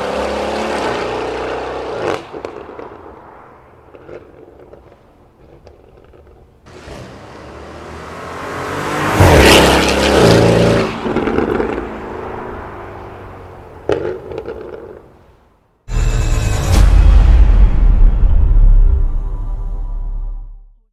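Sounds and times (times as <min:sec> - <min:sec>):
car engine accelerating hard: 0:06.7 - 0:13.2.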